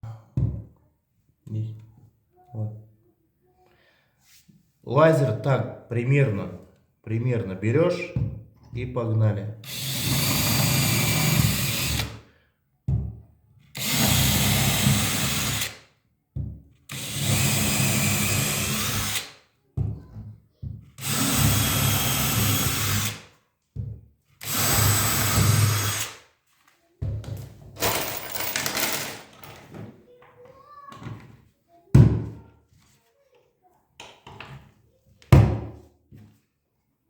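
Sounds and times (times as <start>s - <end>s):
electric drill into wood: 9.6s - 12.2s, 13.8s - 15.8s, 16.9s - 19.4s, 21.0s - 23.2s, 24.4s - 26.2s.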